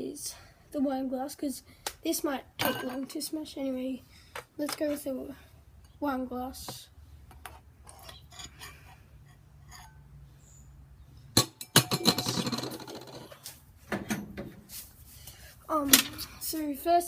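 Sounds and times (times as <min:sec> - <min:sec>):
objects rattling: 0:11.4 - 0:13.5.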